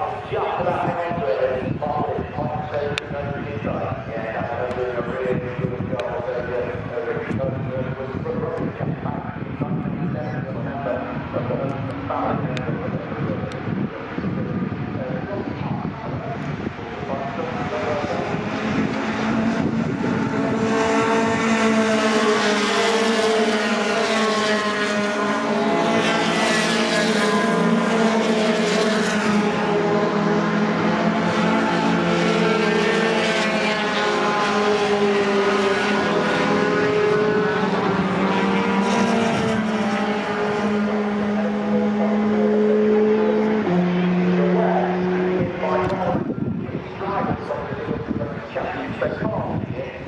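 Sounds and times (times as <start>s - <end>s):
racing truck engines shifting gears: 10.8s - 49.0s.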